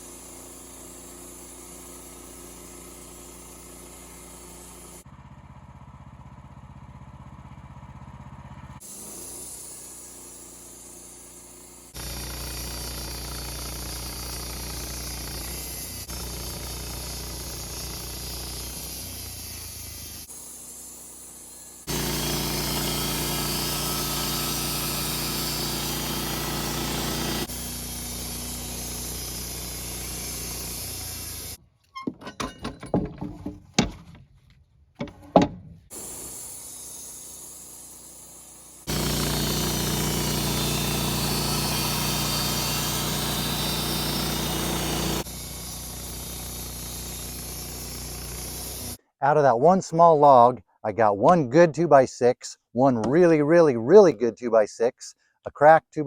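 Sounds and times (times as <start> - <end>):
band sawmill running: 0.0 - 5.1, 7.5 - 31.6, 35.9 - 49.0
saw blade cutting log: 8.8 - 31.6, 35.9 - 49.0.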